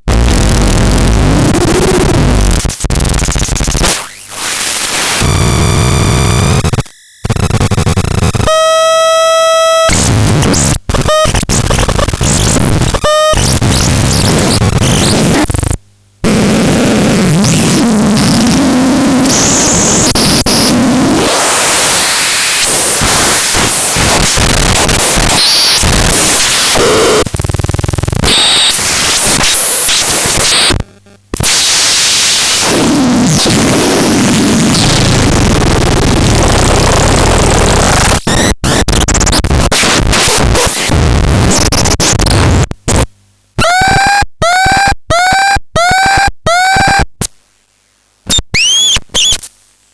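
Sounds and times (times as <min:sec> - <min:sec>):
buzzing tone with overtones: 0:00.0 - 0:49.4
loud harsh electronic static: 0:00.0 - 0:49.5.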